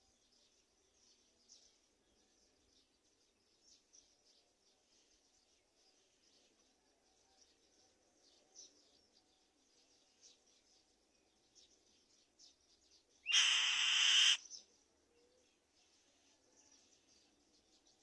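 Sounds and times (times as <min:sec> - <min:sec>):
faint bird chirping: 0:00.0 - 0:18.0
bird rasping screech: 0:13.3 - 0:14.4.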